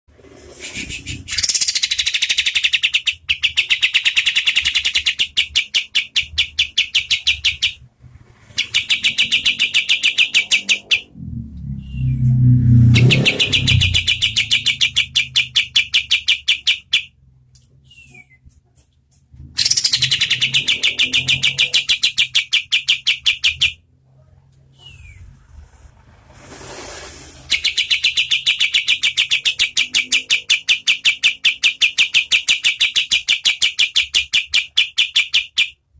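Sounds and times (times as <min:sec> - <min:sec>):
low rumble: 0:11.0 - 0:14.7, 0:24.1 - 0:27.5.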